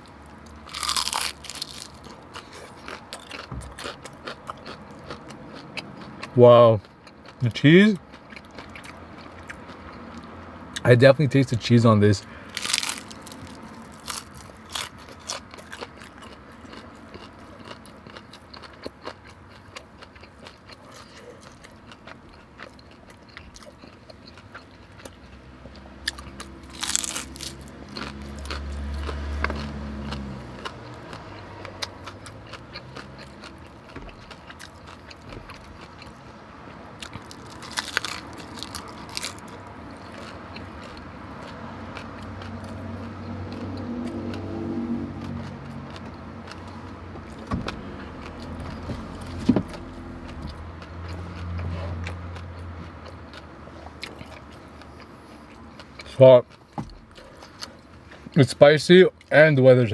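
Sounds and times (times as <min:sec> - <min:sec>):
crunchy bites: 0:00.0 - 0:05.9, 0:12.4 - 0:25.4, 0:26.0 - 0:36.2, 0:37.0 - 0:44.4
chewing: 0:00.0 - 0:07.4, 0:08.0 - 0:10.8, 0:12.4 - 0:58.4.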